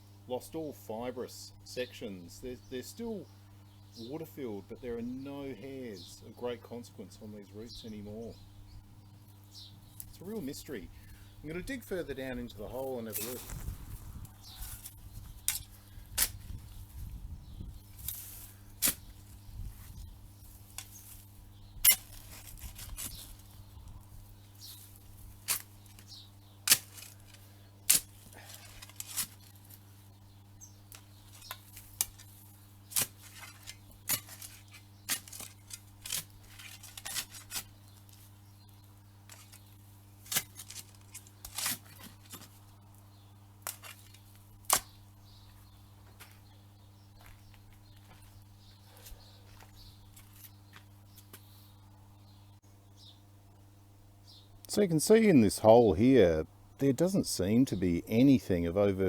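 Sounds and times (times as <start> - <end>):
spade digging into soil: 13.0 - 13.7, 14.6 - 16.5, 18.0 - 19.3, 21.8 - 23.5, 24.7 - 29.8, 30.9 - 37.8, 39.3 - 42.6.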